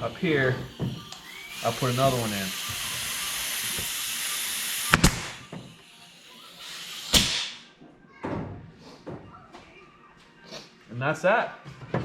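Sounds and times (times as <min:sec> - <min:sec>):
nail gun firing: 0:04.6 - 0:05.5, 0:07.0 - 0:07.7.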